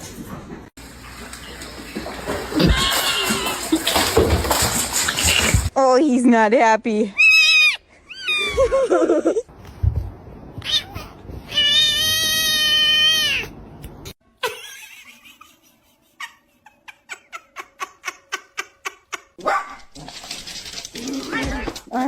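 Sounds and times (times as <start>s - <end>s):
cat yowling meow: 10.7s - 13.5s.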